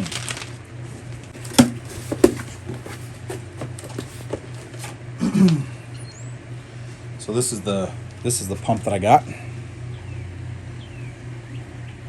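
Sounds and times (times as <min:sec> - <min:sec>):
handling ticks and rustles: 0:00.0 - 0:05.0
steady low hum: 0:00.0 - 0:12.0.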